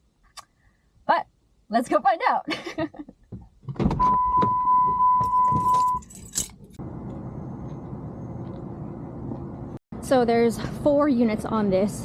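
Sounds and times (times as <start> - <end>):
steady electronic beep: 4.0 - 6.0
keys jangling: 5.3 - 6.8.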